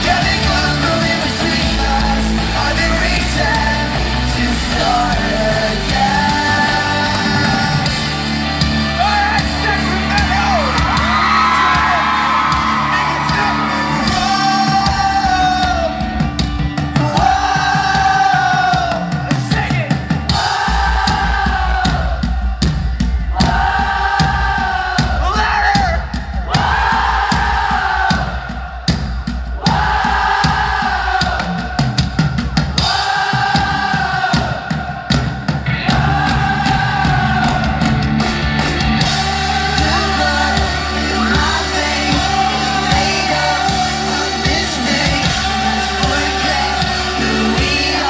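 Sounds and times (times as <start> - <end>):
crowd yelling and singing: 0.0 - 48.0
live rock band: 0.0 - 48.0
sung vocals: 0.0 - 48.0.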